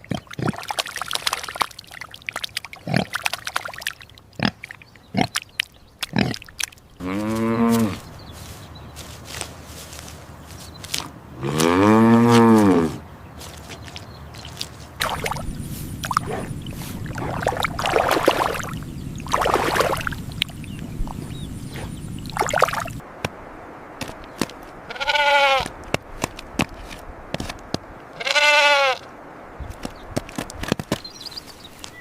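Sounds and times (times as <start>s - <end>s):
sheep bleating: 24.9s - 25.7s, 28.2s - 29.0s.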